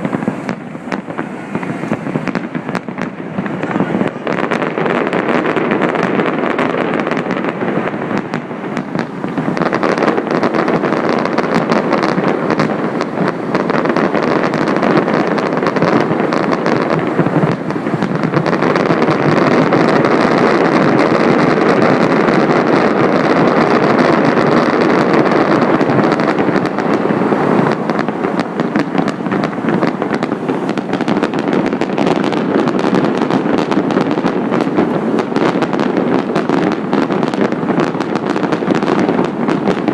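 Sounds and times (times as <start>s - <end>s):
fireworks crackling and banging: 0.0s - 39.9s
wind buffeting microphone: 0.0s - 39.9s.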